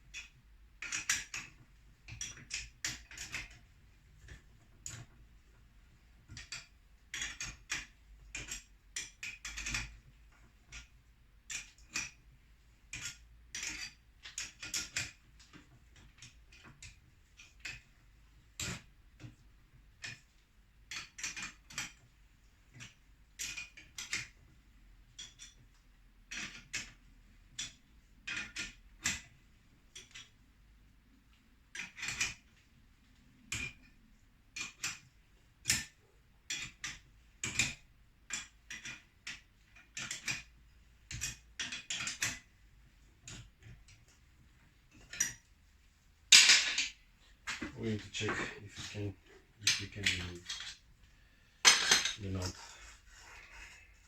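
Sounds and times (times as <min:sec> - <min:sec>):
wrench clinking on metal nuts: 0:46.3 - 0:47.6, 0:49.6 - 0:50.8, 0:51.6 - 0:52.6.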